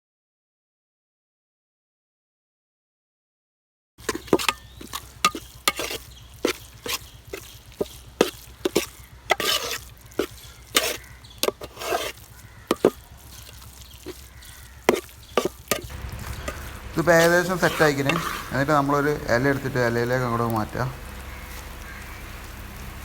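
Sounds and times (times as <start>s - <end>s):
spatula scraping and knocking pan: 4.0s - 22.3s.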